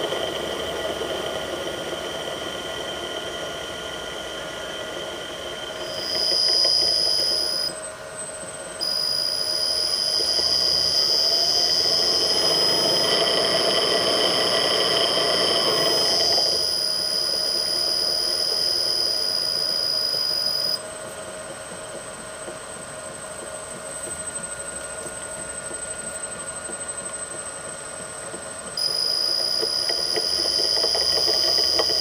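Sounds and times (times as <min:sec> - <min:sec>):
squealing motor bearings: 0:03.9 - 0:07.8, 0:08.8 - 0:20.8, 0:28.8 - 0:32.0.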